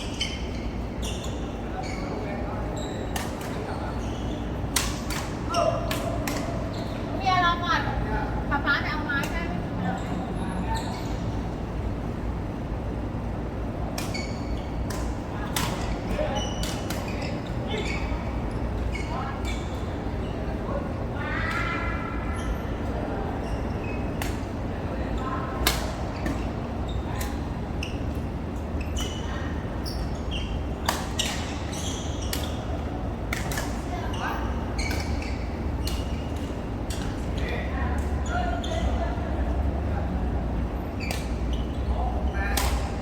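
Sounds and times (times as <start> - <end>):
shoe squeaks: 0.0 - 7.2, 9.8 - 11.4, 14.0 - 20.5, 21.6 - 24.2, 26.1 - 33.0, 33.9 - 36.4, 37.0 - 39.1, 41.0 - 43.0
sports hall hum: 0.0 - 43.0.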